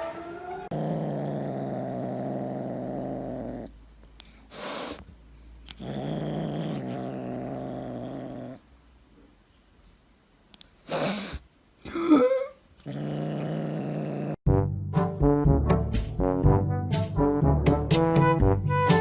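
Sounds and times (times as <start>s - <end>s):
cat growling: 0.6s - 3.8s, 5.7s - 8.7s, 12.8s - 14.4s
cat hissing: 4.5s - 5.1s, 10.8s - 11.5s.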